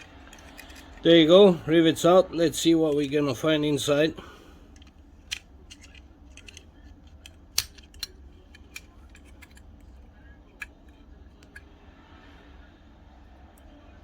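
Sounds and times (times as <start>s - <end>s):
small metal parts clicking: 0.0s - 1.1s, 4.7s - 10.0s.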